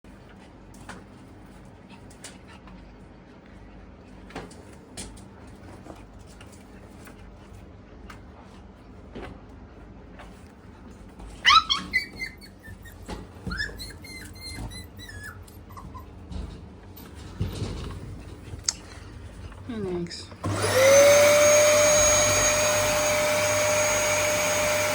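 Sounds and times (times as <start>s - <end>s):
faint clicks and shuffling: 0.1s - 11.5s, 12.6s - 20.4s
dog whining: 11.4s - 16.3s.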